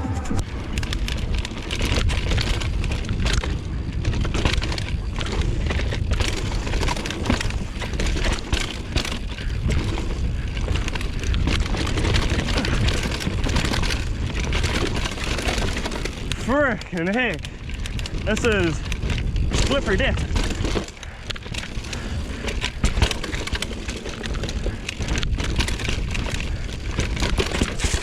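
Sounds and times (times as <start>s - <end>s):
wind rumbling on microphone: 0.0s - 28.0s
bike clicks and rattles: 0.3s - 28.0s.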